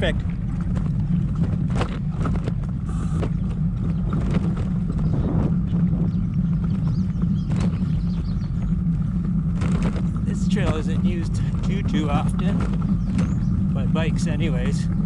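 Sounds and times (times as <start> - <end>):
bicycle tyres rumbling on trail: 0.0 - 15.0
bike clicks and rattles: 0.0 - 15.0
wind on microphone: 0.0 - 15.0.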